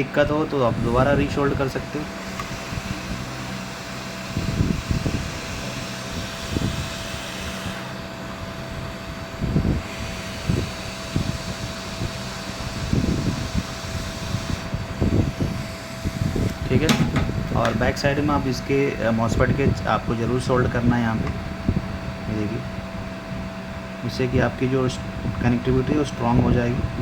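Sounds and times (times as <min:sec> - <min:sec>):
fan whirring: 0:00.0 - 0:27.0
low thuds: 0:15.1 - 0:18.3.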